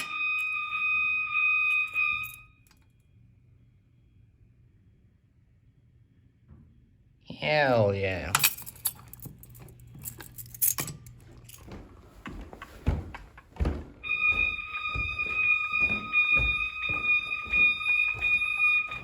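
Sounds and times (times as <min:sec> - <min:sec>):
fire alarm high electronic tone: 0:00.0 - 0:02.8, 0:14.0 - 0:19.0
faint low hum: 0:00.6 - 0:19.0
knocks and thuds: 0:11.6 - 0:19.0.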